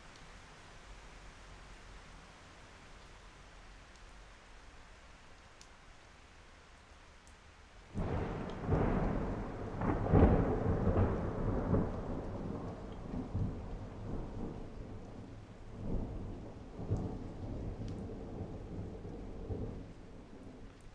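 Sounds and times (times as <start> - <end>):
heavy rain falling: 7.8 - 20.9
thunder rumbling: 8.0 - 20.6.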